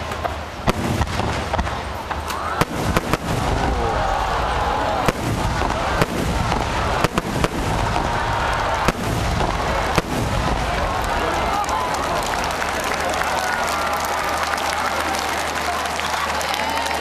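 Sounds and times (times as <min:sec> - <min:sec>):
loud firework bangs: 0:00.0 - 0:13.0
fireworks crackling rumble: 0:00.0 - 0:17.0.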